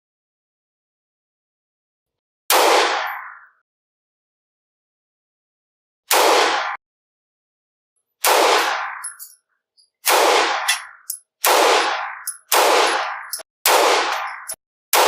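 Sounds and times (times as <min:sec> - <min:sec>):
pistol shots with echo: 0:02.5 - 0:03.4, 0:06.1 - 0:06.8, 0:08.2 - 0:09.2, 0:10.0 - 0:15.0
small metallic clinks: 0:09.0 - 0:10.0.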